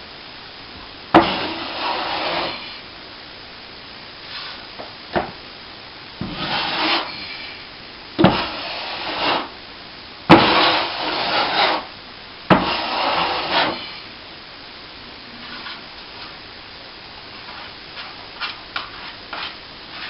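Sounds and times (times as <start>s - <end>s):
trowel scraping plaster: 1.2s - 2.7s, 6.2s - 7.5s, 8.2s - 9.5s, 10.3s - 11.9s, 12.5s - 14.0s.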